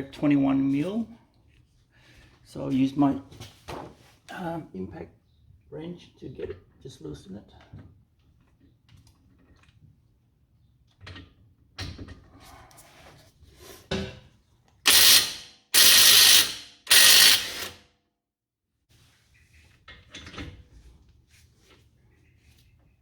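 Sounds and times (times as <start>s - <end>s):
impact wrench bursts: 14.9s - 17.8s.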